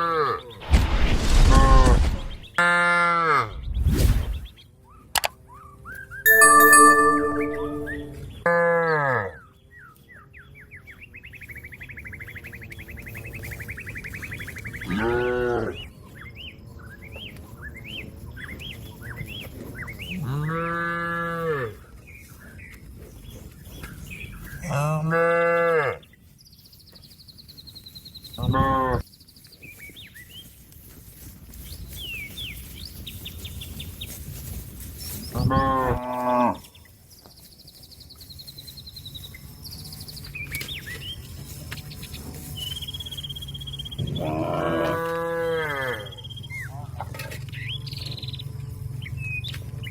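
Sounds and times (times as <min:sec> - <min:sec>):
cow mooing: 0:44.2 - 0:46.1.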